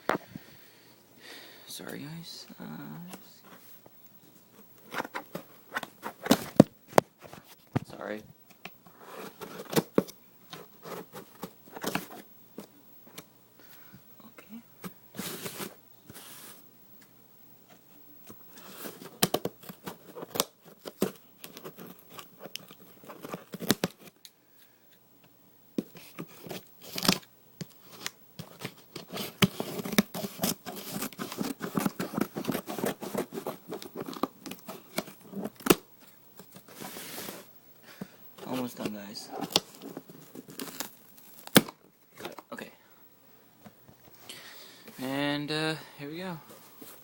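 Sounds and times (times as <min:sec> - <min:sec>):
packaging tearing and crinkling: 0:19.1 - 0:24.2, 0:26.1 - 0:27.3, 0:28.0 - 0:35.8, 0:38.8 - 0:41.8.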